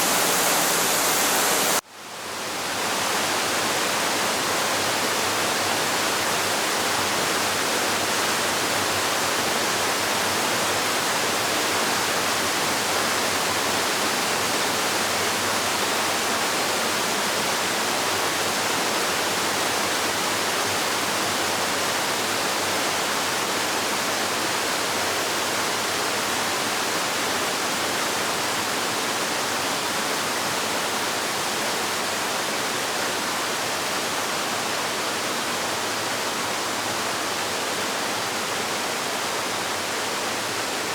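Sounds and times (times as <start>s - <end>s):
waterfall roaring: 0.0s - 1.8s.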